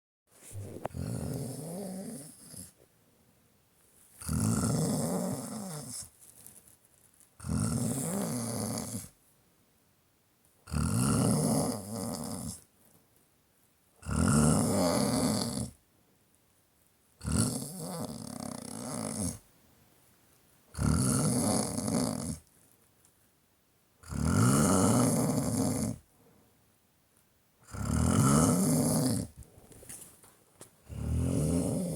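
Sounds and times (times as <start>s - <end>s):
person snoring: 0.5s - 2.7s, 4.2s - 6.0s, 7.4s - 9.1s, 10.7s - 12.6s, 14.0s - 15.8s, 17.2s - 19.4s, 20.8s - 22.4s, 24.0s - 26.0s, 27.6s - 29.4s, 30.9s - 31.9s.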